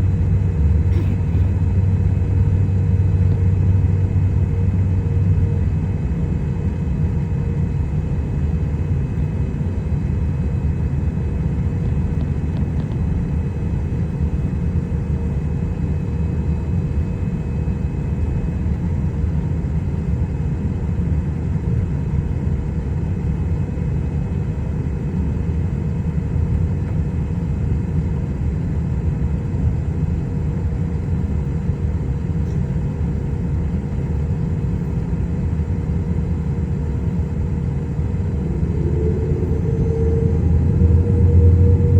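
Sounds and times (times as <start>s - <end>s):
jet engines rumbling: 0.0s - 21.0s, 22.0s - 41.9s
thin whining tones: 37.0s - 41.9s.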